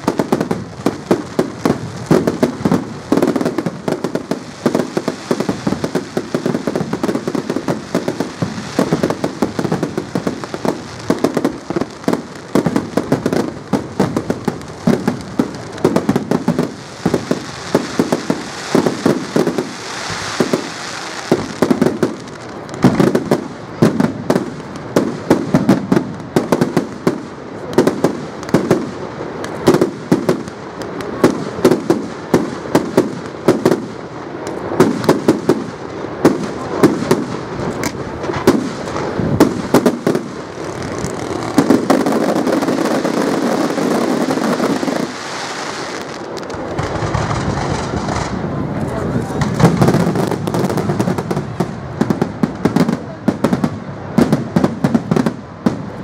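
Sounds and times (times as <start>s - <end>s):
fireworks bangs and crackles: 0.0s - 56.0s
fireworks hissing rush: 0.0s - 56.0s.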